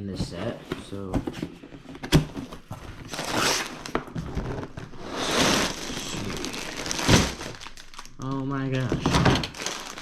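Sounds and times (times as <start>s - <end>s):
plastic and cardboard rustling: 0.0s - 10.0s.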